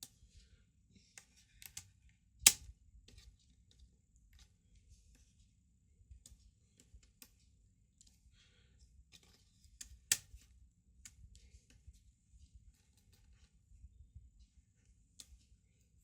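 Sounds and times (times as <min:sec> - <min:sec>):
laptop parts clicking and tapping: 0:01.1 - 0:04.5, 0:09.1 - 0:11.9.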